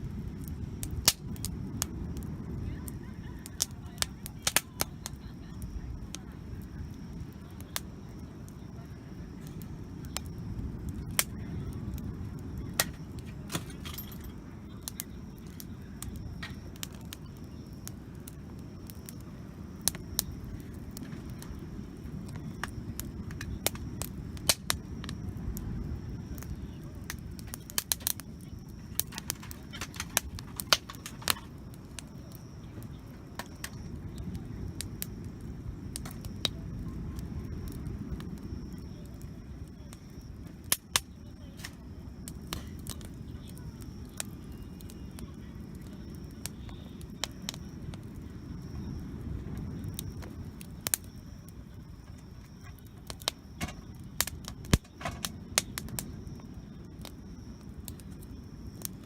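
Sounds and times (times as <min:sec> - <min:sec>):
campfire crackling and popping: 0:00.0 - 0:59.0
steady low rumble: 0:00.0 - 0:59.0.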